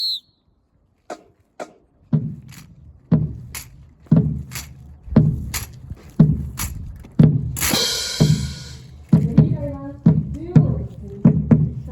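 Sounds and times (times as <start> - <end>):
bass drum strokes: 5.1 - 11.9.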